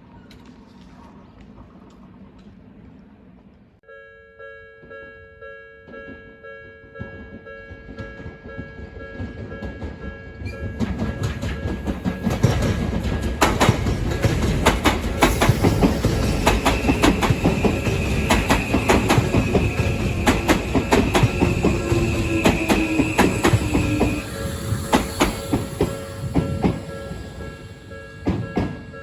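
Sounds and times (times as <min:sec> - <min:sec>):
train rumbling past: 0:06.9 - 0:29.0
train wheels clacking on rails: 0:06.9 - 0:29.0
level-crossing bell dinging: 0:15.7 - 0:29.0.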